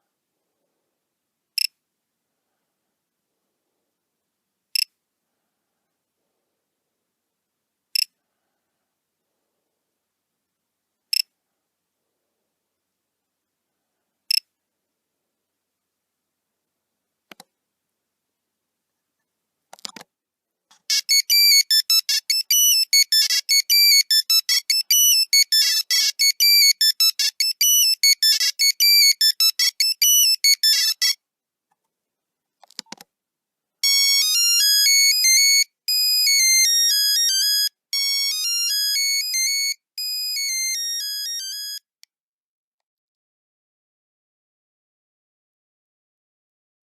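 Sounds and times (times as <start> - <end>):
monophonic ringtone beeping: 20.9 - 31.2, 33.8 - 41.9.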